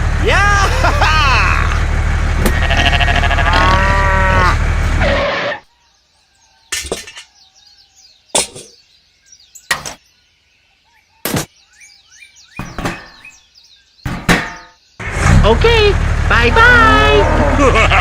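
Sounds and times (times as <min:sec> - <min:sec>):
sharp knocks: 0:12.6 - 0:13.4, 0:14.0 - 0:14.8.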